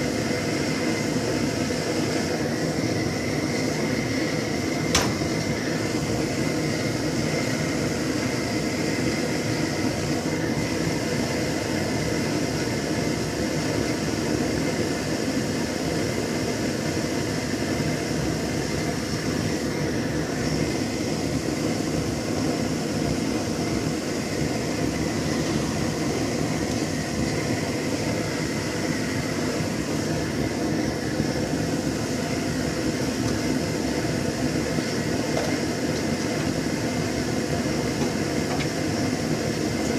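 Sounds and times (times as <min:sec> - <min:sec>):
tractor diesel engine running: 0:18.2 - 0:39.9.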